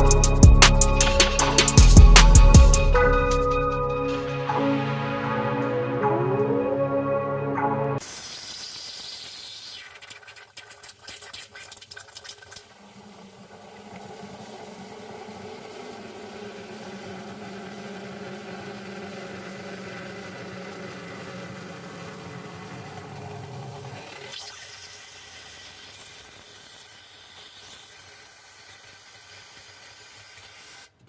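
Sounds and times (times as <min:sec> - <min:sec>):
steamer hissing: 0:08.0 - 0:31.0
steady hum: 0:12.7 - 0:24.6.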